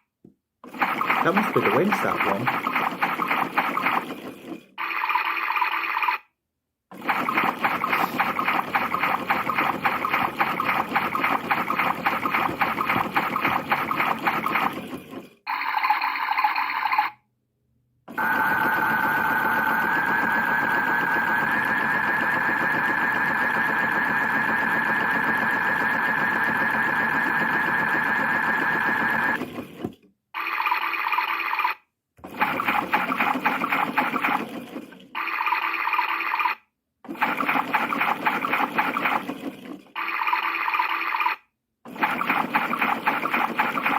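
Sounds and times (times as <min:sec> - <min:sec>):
toy electronic sound effects: 0:00.8 - 0:04.0, 0:04.8 - 0:06.3, 0:07.2 - 0:13.6, 0:15.5 - 0:17.2, 0:30.4 - 0:31.9, 0:35.2 - 0:39.1, 0:40.0 - 0:43.9.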